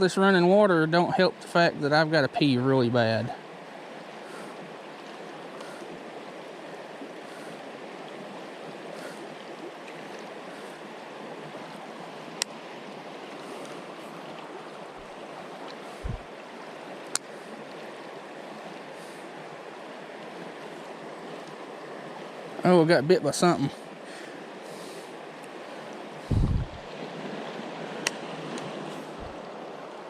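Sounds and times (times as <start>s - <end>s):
creek water rushing: 0.0s - 30.0s
low thump: 16.0s - 16.2s, 26.3s - 26.8s.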